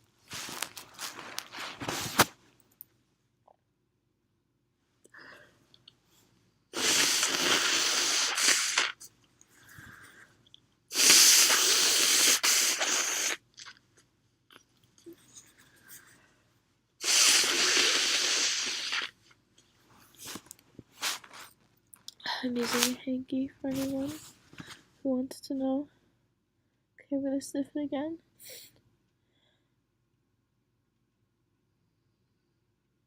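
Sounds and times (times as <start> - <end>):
person blowing nose: 6.7 - 9.1, 10.9 - 13.4, 17.0 - 19.2.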